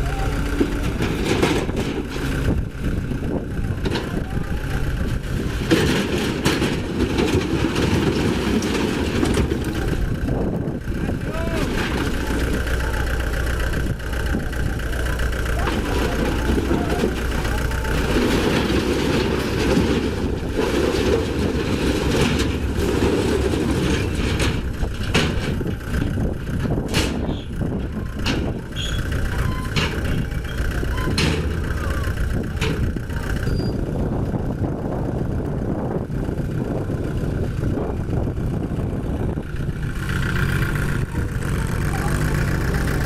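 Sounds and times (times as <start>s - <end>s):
construction machinery engine running: 0.0s - 43.0s
sharp knocks and clanks: 15.6s - 27.6s, 28.2s - 33.0s.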